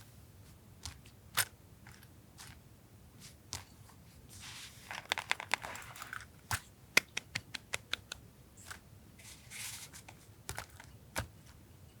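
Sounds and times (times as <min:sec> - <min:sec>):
paper rustling: 0:04.3 - 0:06.3, 0:08.7 - 0:10.9
sharp taps and clicks: 0:07.0 - 0:08.2.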